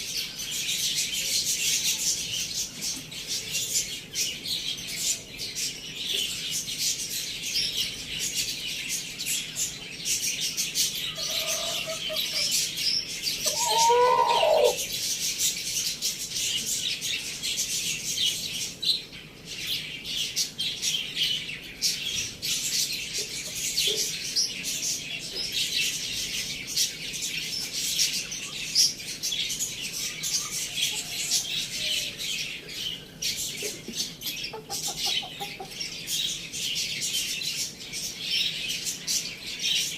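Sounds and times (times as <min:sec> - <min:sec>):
small birds twittering: 0:00.0 - 0:39.9
lower loud bird call: 0:13.4 - 0:14.9.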